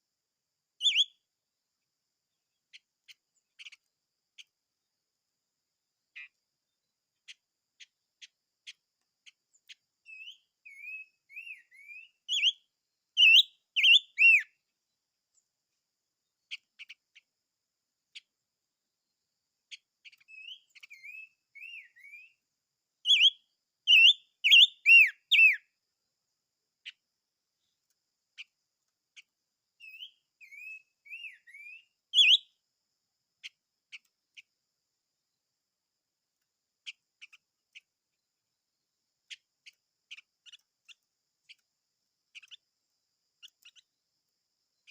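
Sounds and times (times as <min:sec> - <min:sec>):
songbird singing whistled slurs: 0:00.8 - 0:01.3, 0:02.5 - 0:04.6, 0:06.1 - 0:14.7, 0:16.3 - 0:17.4, 0:19.6 - 0:25.8, 0:26.8 - 0:27.0, 0:27.6 - 0:32.6, 0:33.4 - 0:34.6, 0:36.8 - 0:38.3, 0:39.2 - 0:44.9
faint ticks: 0:02.7 - 0:04.6, 0:07.2 - 0:09.8, 0:16.5 - 0:17.3, 0:19.7 - 0:21.0, 0:27.6 - 0:29.4, 0:33.4 - 0:34.6, 0:36.3 - 0:38.2, 0:39.2 - 0:44.9.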